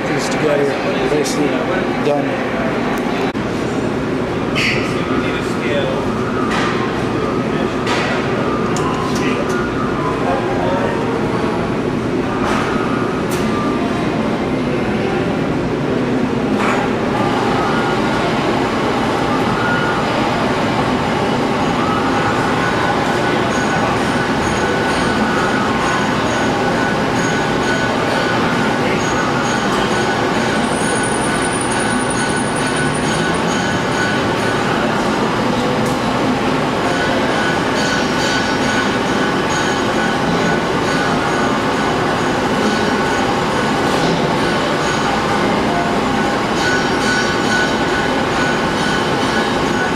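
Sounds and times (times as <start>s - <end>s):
machine tool running with whine: 0.0s - 49.9s.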